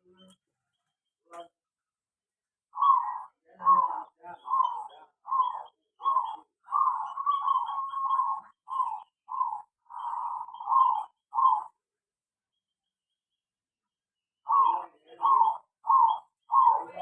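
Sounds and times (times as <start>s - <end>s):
doves cooing: 2.7s - 11.9s, 14.4s - 17.0s.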